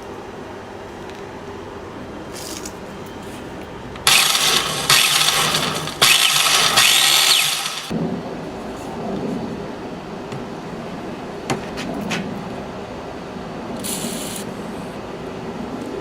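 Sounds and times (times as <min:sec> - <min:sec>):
machine running with rough bearings: 0:04.0 - 0:07.9.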